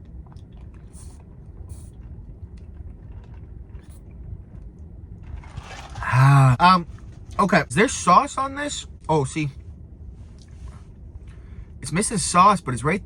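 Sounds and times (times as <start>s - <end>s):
car engine idling: 4.8s - 13.0s.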